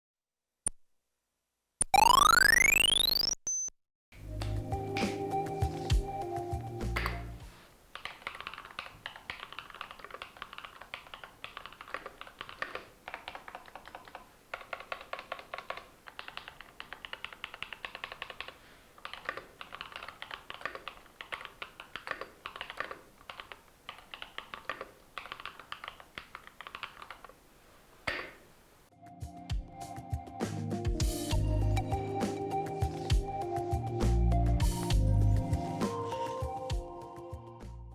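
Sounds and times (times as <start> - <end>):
typing on mechanical keyboard: 7.9 - 27.4.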